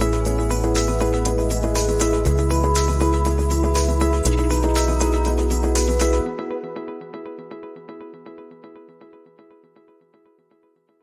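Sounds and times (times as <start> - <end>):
bass line: 0.0 - 6.3
synth chords: 0.0 - 8.1.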